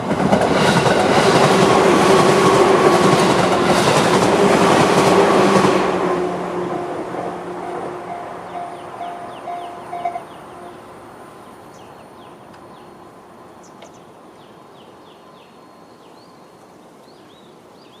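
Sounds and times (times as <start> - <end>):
birds chirping: 7.6 - 18.0
level crossing alarm dings: 7.7 - 10.8.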